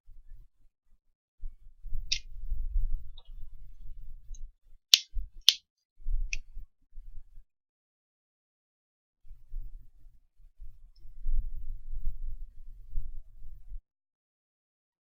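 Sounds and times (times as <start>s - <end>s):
sharp clicks: 4.9s - 5.6s.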